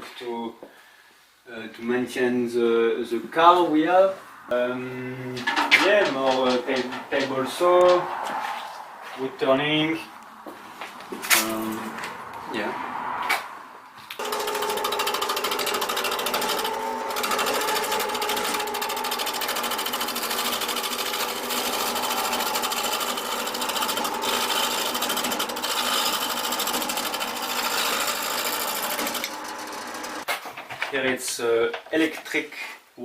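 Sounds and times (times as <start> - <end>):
workshop machine rattling: 5.4 - 8.0, 14.2 - 30.3.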